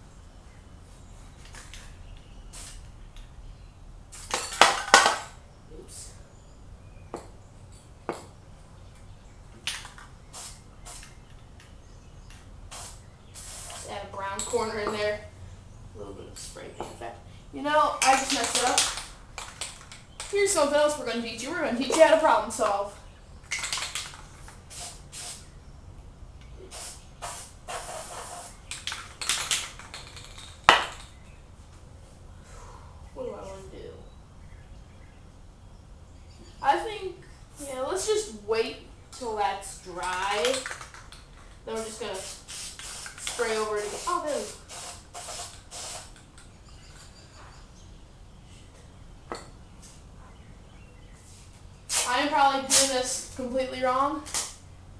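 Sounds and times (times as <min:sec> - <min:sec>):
spray paint can hissing: 0:02.5 - 0:02.9, 0:04.1 - 0:04.4, 0:09.7 - 0:11.2, 0:12.7 - 0:14.6, 0:18.0 - 0:20.4, 0:23.5 - 0:25.5, 0:26.6 - 0:31.1, 0:39.9 - 0:46.3, 0:51.9 - 0:53.2
spray can clicks: 0:23.5 - 0:25.4, 0:40.0 - 0:41.2, 0:41.8 - 0:46.3, 0:51.9 - 0:52.9.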